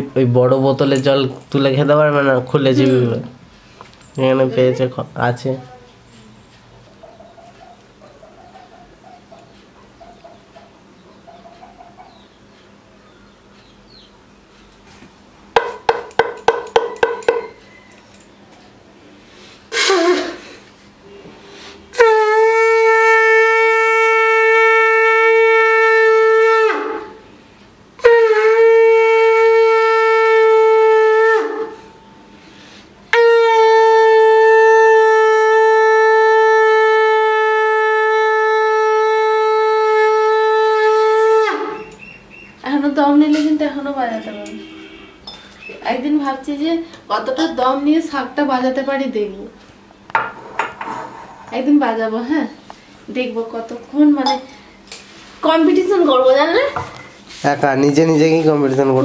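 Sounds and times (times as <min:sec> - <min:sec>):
conch shell short toots: 0:19.7 - 0:27.2, 0:28.0 - 0:32.3, 0:33.1 - 0:42.0, 0:44.1 - 0:45.4
conch shell long blasts: 0:19.7 - 0:27.4, 0:28.0 - 0:32.4, 0:33.1 - 0:41.9, 0:43.8 - 0:45.3.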